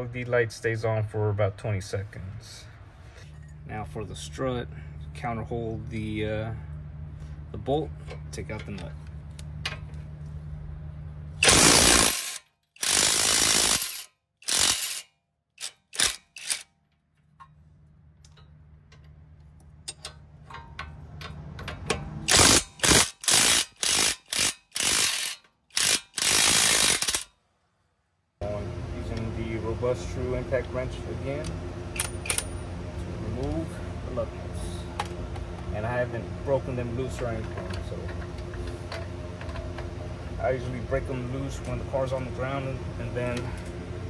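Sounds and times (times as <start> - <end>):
low steady hum: 0.0 - 14.1, 28.4 - 44.0
impact wrench hammering: 11.4 - 15.0, 19.9 - 27.3.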